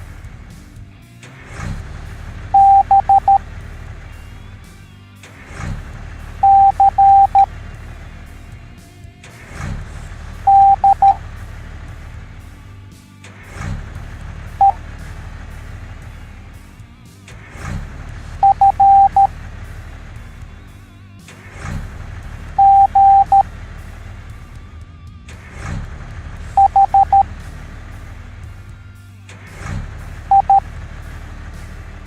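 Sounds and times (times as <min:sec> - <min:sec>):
low steady rumble: 0:02.1 - 0:04.4, 0:05.9 - 0:08.8, 0:09.8 - 0:12.6, 0:17.9 - 0:20.9, 0:22.0 - 0:24.7, 0:26.0 - 0:29.0
morse code beeps: 0:02.6 - 0:03.4, 0:06.4 - 0:07.5, 0:10.5 - 0:11.2, 0:18.4 - 0:19.3, 0:22.6 - 0:23.4, 0:26.6 - 0:27.3, 0:30.3 - 0:30.6.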